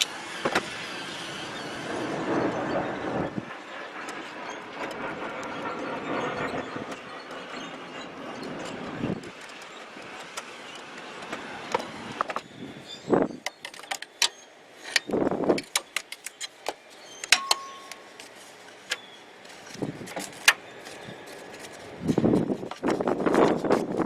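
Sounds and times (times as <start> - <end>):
hand tools clicking on metal: 13.5 - 18.0
scraping and rustling: 16.1 - 24.0
ringing metal clink: 17.3 - 18.0.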